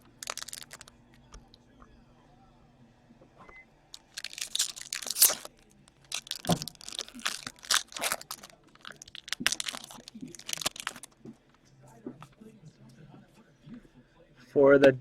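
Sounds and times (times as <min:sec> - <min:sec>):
card packs being torn open: 0:00.0 - 0:01.0, 0:04.0 - 0:11.2
wrappers crinkling: 0:00.0 - 0:01.0, 0:04.0 - 0:11.2.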